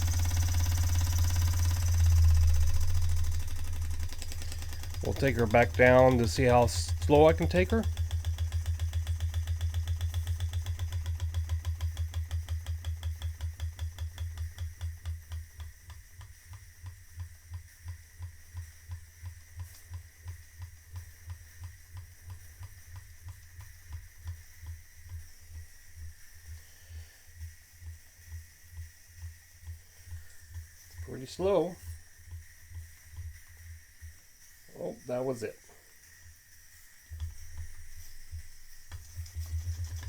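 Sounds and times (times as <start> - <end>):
toy steam engine beating: 0.0 - 20.7.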